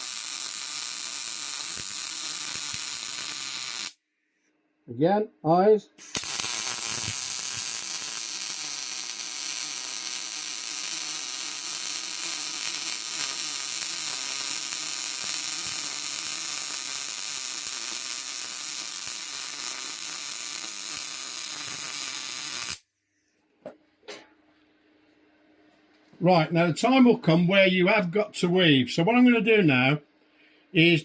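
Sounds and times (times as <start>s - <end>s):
welding arc crackling hiss: 0.0s - 4.0s, 6.0s - 22.8s.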